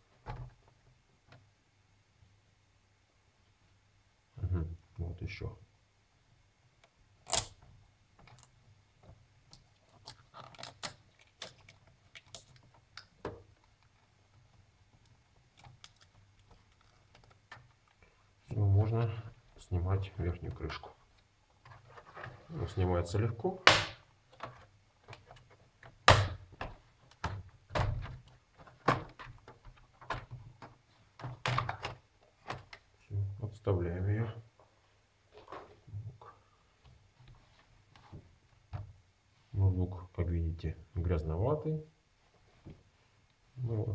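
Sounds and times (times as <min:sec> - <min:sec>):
faint low hum: 0:00.0 - 0:43.9.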